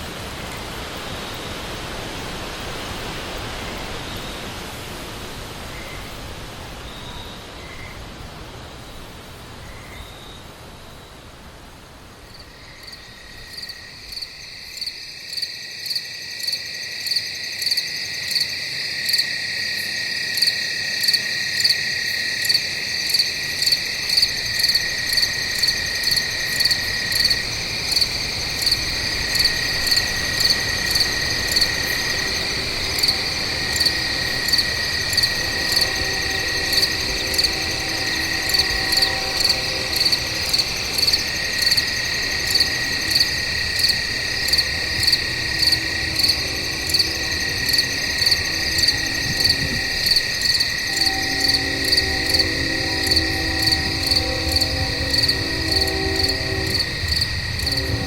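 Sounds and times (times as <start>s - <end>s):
insects pulsed chirp: 12.1s - 58.0s
high insect trill: 12.2s - 58.0s.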